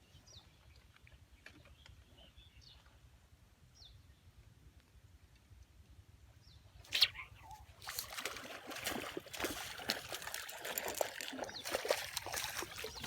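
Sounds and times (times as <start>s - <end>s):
water splashing and sloshing: 6.9s - 13.0s.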